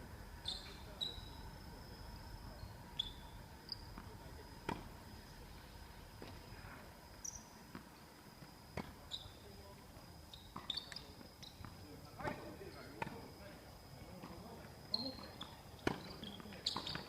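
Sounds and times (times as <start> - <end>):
short high squeaks: 0.4 - 1.4, 2.6 - 4.0, 10.3 - 11.6, 14.9 - 17.0.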